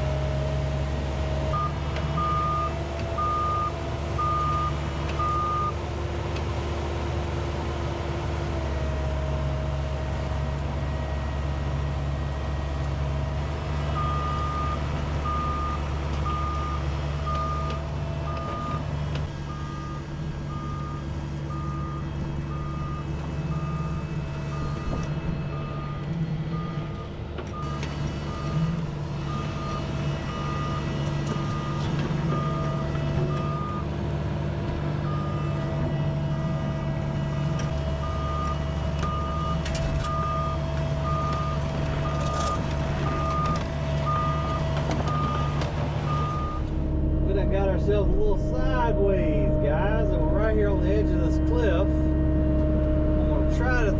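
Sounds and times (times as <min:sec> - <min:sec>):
diesel engine running: 0:00.0 - 0:53.9.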